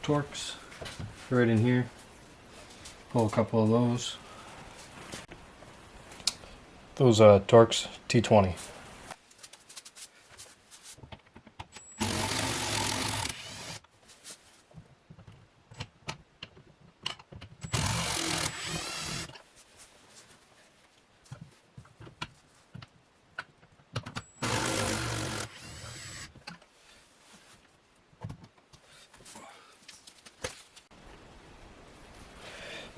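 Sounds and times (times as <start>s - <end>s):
cordless drill running: 12.0s - 13.8s, 17.7s - 19.3s, 24.4s - 26.3s.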